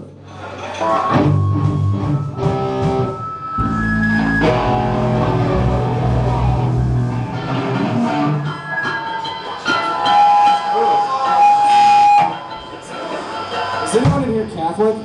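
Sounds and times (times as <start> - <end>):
electric guitar through amplifier: 0.8 - 8.9
bass guitar deep notes: 1.1 - 8.6.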